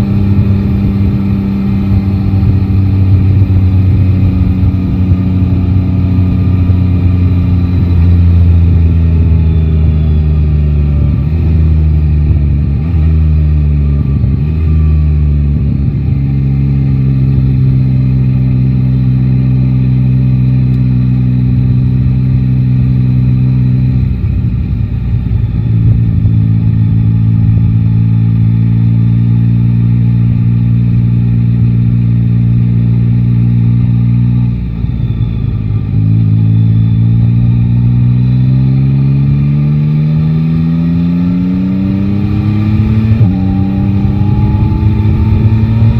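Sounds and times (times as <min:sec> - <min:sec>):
motorcycle engine accelerating and cruising: 0:00.0 - 0:45.9.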